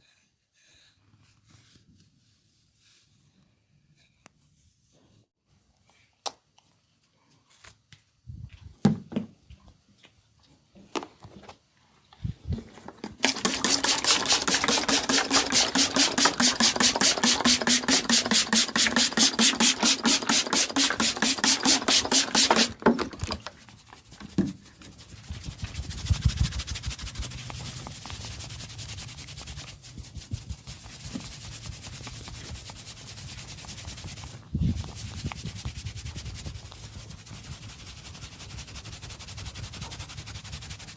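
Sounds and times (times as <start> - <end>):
hands rubbing skin: 13.2 - 22.8, 23.6 - 40.9.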